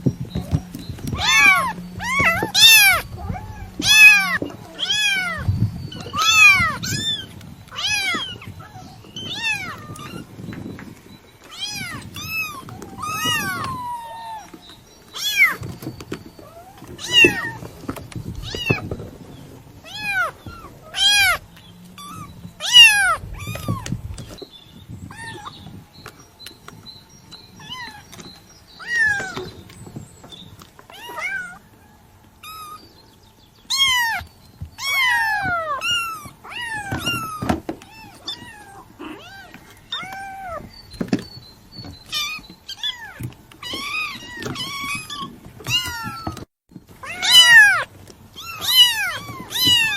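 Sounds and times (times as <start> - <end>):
kitten mewing: 47.0 - 47.8.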